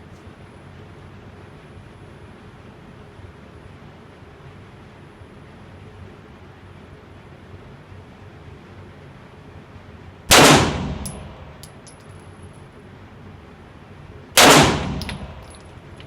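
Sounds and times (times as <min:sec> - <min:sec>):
reverberant gunshots: 0:10.3 - 0:11.6, 0:14.4 - 0:15.5.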